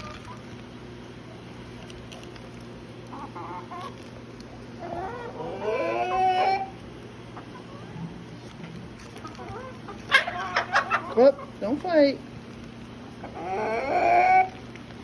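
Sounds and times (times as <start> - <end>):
chickens clucking: 0.0 - 15.0
rooster calling: 4.8 - 8.1, 9.4 - 11.6, 13.2 - 14.6.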